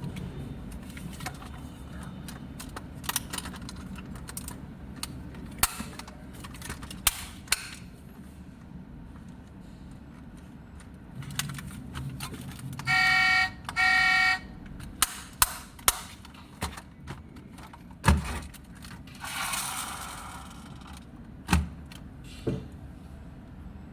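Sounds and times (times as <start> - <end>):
toy handling clicks and knocks: 0.8 - 7.8
toy car horn beeps: 12.8 - 14.5.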